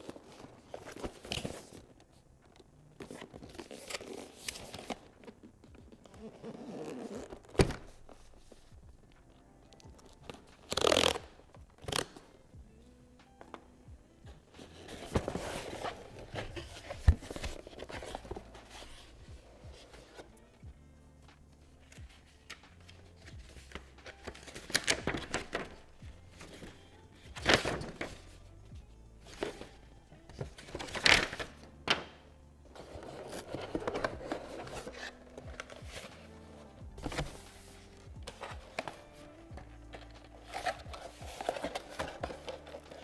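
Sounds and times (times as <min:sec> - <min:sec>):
packaging rustling and scraping: 0:00.0 - 0:08.7, 0:14.5 - 0:20.3, 0:32.7 - 0:43.0
soft background music: 0:00.0 - 0:43.0.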